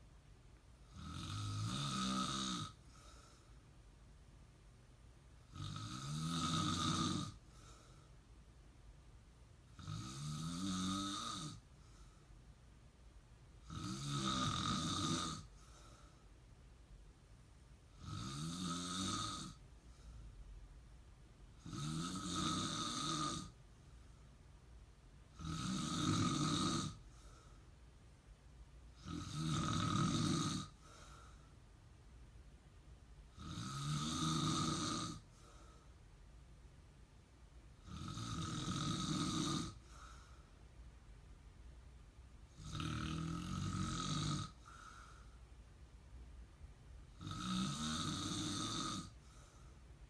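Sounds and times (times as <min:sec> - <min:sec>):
man snoring: 0:00.9 - 0:03.0, 0:05.4 - 0:07.4, 0:09.7 - 0:11.7, 0:13.6 - 0:15.6, 0:17.9 - 0:19.6, 0:21.6 - 0:23.6, 0:25.3 - 0:27.1, 0:29.0 - 0:31.0, 0:33.3 - 0:35.5, 0:37.8 - 0:40.1, 0:42.5 - 0:45.3, 0:47.1 - 0:49.4.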